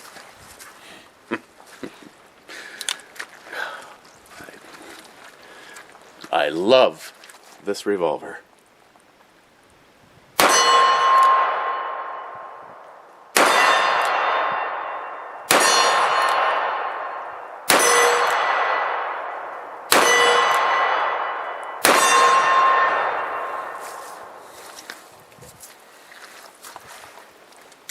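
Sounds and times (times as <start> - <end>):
metallic clangs on steel targets: 10.4 - 12.6, 13.4 - 24.4.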